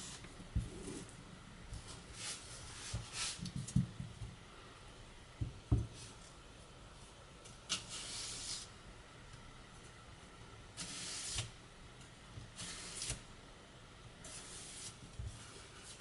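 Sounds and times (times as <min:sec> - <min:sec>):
knife slicing onion: 0:10.8 - 0:11.6, 0:12.5 - 0:13.3.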